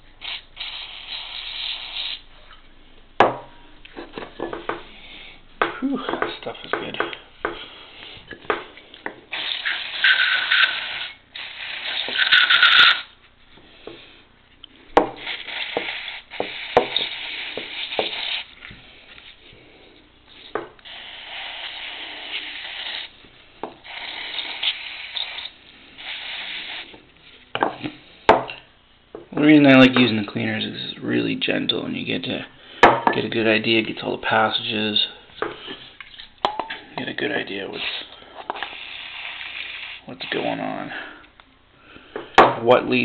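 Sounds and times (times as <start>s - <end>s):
aerosol spray hissing: 0.2s - 2.3s, 9.3s - 13.2s, 15.0s - 18.6s, 20.5s - 27.0s, 37.7s - 40.8s.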